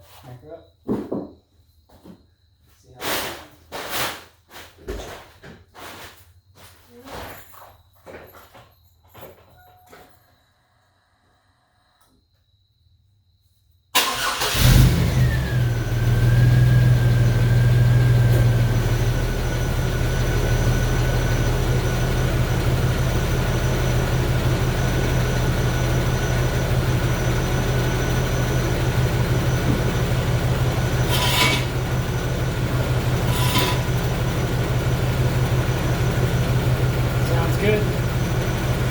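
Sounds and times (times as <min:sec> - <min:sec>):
car engine starting and idling: 0:14.0 - 0:38.9.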